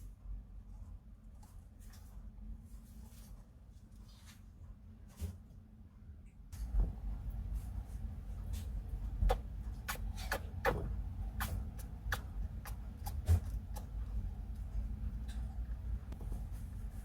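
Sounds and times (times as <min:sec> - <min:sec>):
hamster clicking while eating: 0:09.2 - 0:15.9.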